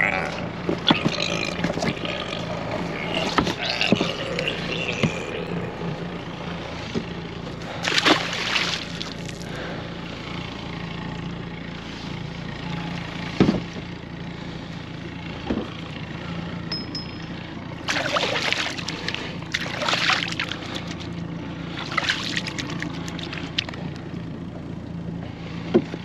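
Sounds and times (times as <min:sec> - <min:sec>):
water noise: 0:00.0 - 0:06.9, 0:07.6 - 0:09.7, 0:17.0 - 0:24.0.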